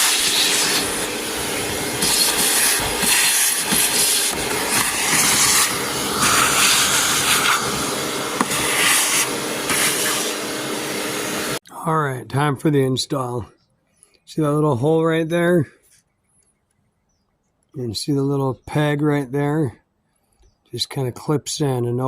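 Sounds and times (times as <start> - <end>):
vacuum cleaner running: 0.0 - 11.6.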